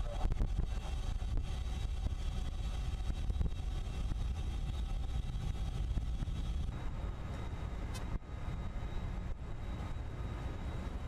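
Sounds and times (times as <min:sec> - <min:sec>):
low rumble of ship under way: 0:00.0 - 0:11.0.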